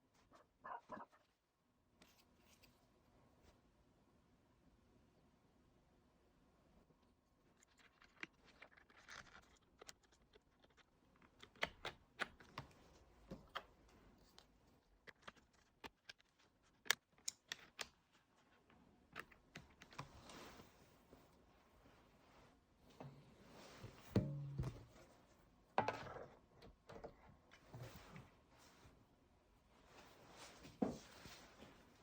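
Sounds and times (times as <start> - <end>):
hands clicking and tapping laptop: 11.3 - 13.7.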